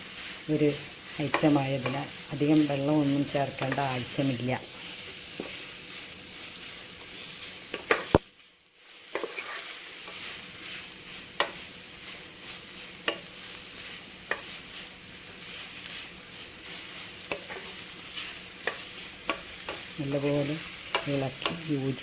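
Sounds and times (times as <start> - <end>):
papaya sizzling in oil: 0.0 - 22.0
spatula knocking and scraping pan: 3.4 - 5.7, 7.0 - 8.3, 9.1 - 10.8, 11.4 - 11.7, 13.0 - 13.3, 14.2 - 14.6, 17.2 - 17.8, 18.6 - 19.9.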